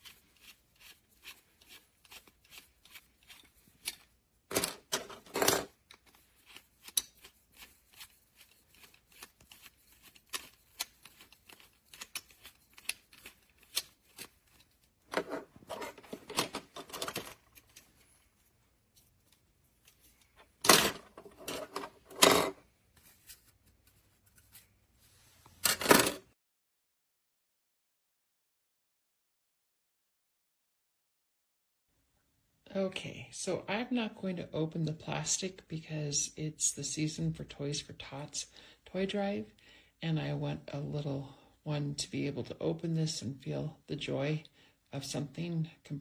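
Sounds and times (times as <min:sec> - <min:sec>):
plastic toy parts clicking: 0:01.6 - 0:07.8, 0:08.4 - 0:15.2.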